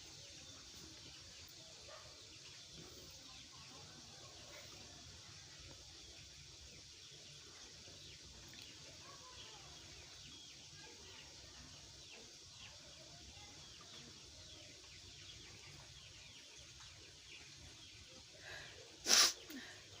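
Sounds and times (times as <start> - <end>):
birds chirping: 0.0 - 20.0
person sneezing: 19.0 - 19.6.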